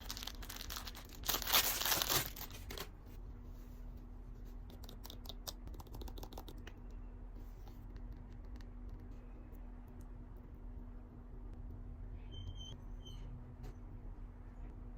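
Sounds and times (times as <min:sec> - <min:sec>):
packaging torn open with crinkling: 0:00.0 - 0:02.9.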